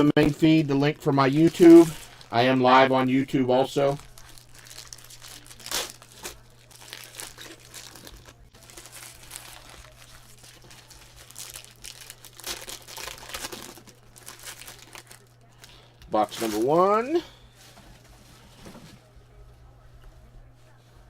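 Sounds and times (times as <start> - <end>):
plastic packaging crinkling: 0.0 - 17.3.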